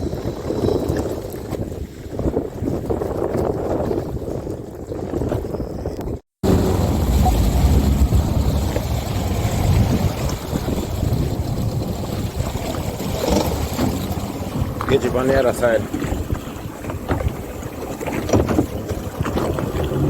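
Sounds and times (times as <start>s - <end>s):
water noise: 0.0s - 20.0s
wind buffeting microphone: 0.0s - 20.0s
low rumble: 6.4s - 14.9s.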